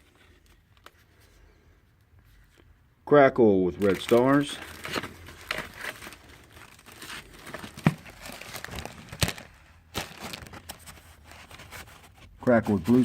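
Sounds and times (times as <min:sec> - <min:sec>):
packaging crinkling: 0:03.7 - 0:12.2.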